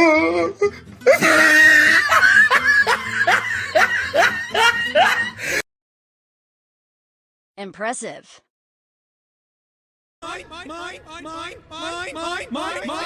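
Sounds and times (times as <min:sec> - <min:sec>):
wavering sung voice: 0:10.2 - 0:13.0.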